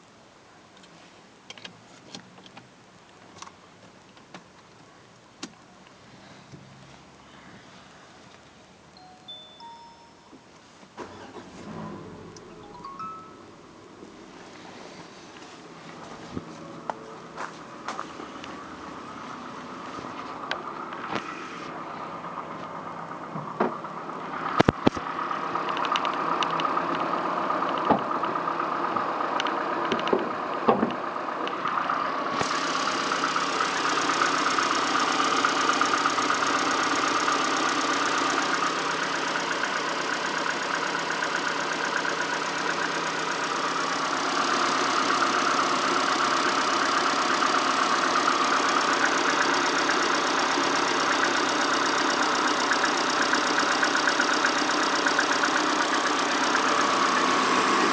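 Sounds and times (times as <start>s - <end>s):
petrol engine idling with knock: 9.4s - 57.9s
sharp clicks: 24.5s - 27.9s.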